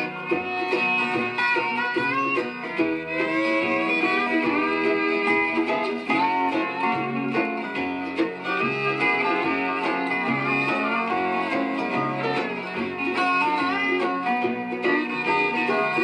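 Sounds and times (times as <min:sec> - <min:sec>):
country string-band music: 0:00.0 - 0:16.0.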